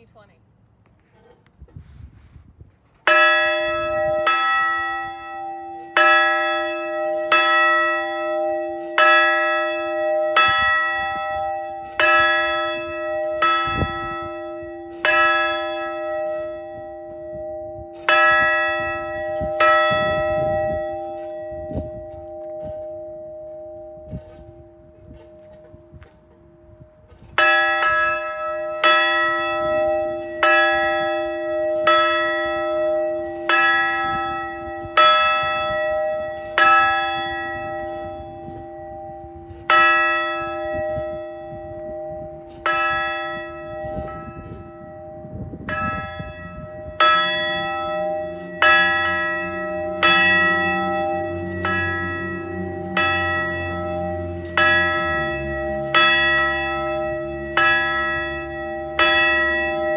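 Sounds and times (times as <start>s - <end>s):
large bell tolling: 3.1s - 59.9s
low rumble: 43.4s - 59.9s.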